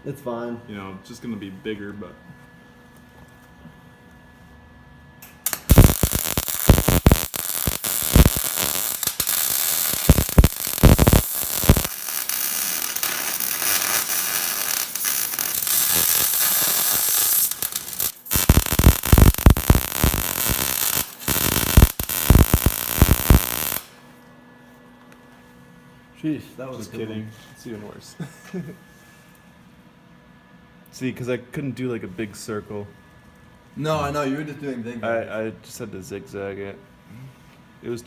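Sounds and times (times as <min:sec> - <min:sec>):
welding arc crackling with pops: 0:05.2 - 0:24.0.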